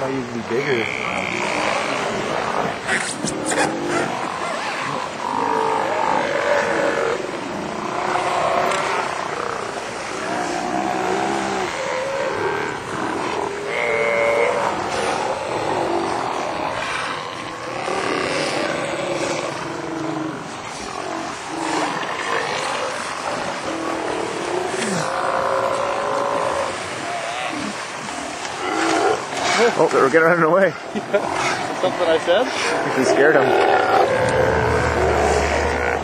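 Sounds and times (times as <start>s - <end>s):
large wild animals calling: 32.5s - 36.0s.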